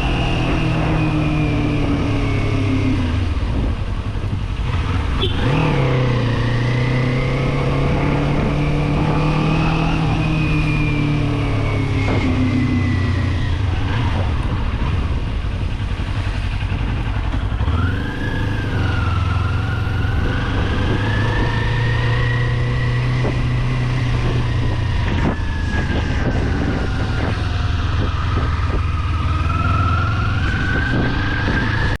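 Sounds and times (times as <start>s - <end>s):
motorcycle engine running: 10.9s - 32.0s.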